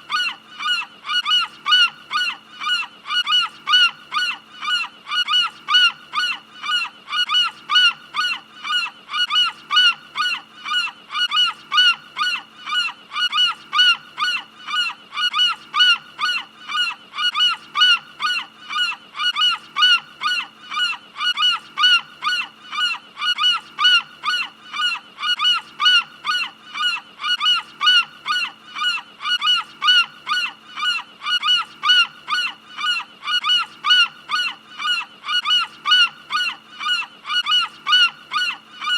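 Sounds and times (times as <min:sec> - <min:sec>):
gull calls: 0:00.0 - 0:38.9.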